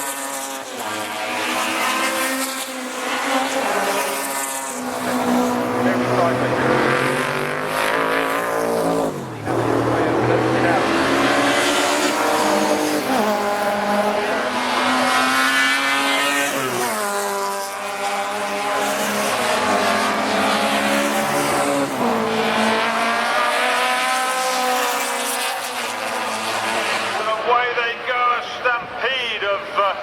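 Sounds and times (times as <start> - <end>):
racing car engines revving: 0.0 - 30.0.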